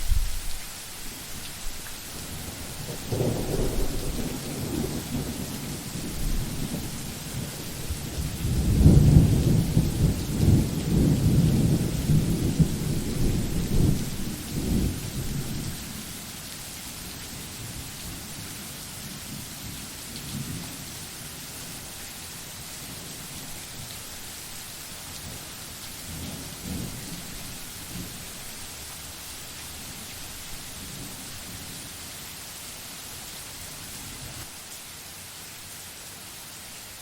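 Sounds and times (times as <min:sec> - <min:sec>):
steady rain: 0:00.0 - 0:37.0
distant thunder rumbles: 0:02.2 - 0:15.8
thunder rumbling: 0:02.2 - 0:15.8.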